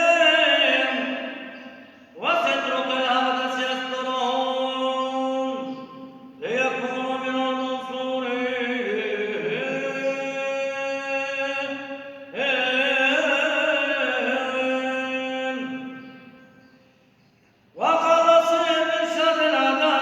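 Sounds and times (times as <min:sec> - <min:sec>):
man singing chant: 0:00.0 - 0:16.7, 0:17.8 - 0:20.0.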